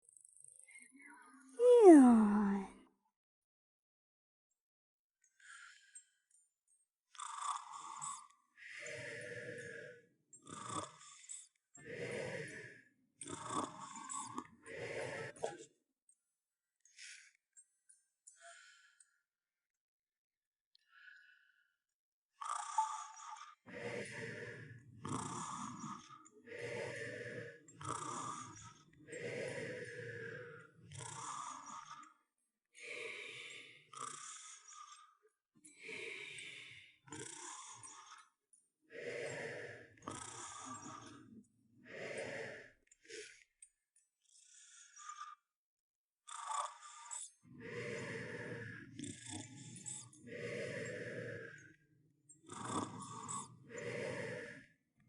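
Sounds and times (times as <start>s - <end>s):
cartoon snoring: 1.6s - 2.7s, 7.1s - 8.3s, 10.4s - 11.2s, 13.2s - 14.4s, 25.0s - 28.8s, 30.6s - 32.2s, 33.9s - 35.2s, 37.1s - 38.3s, 39.4s - 41.2s, 46.3s - 47.0s, 52.5s - 54.6s
rasping rattly snore: 7.1s - 15.7s, 22.4s - 45.5s, 46.3s - 51.8s, 52.4s - 54.8s.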